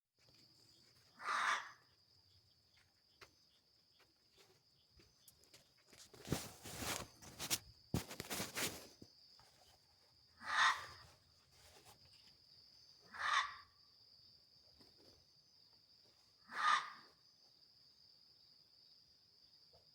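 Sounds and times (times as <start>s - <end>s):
animal giving loud noisy calls: 1.2s - 1.8s, 10.4s - 11.0s, 13.1s - 13.6s, 16.5s - 17.1s
rustling and clicks: 5.9s - 9.1s.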